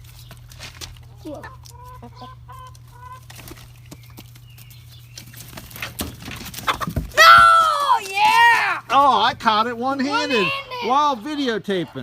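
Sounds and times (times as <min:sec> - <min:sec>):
chickens clucking: 0:00.0 - 0:07.2, 0:08.9 - 0:12.0
wings flapping and scuffling: 0:00.0 - 0:09.4.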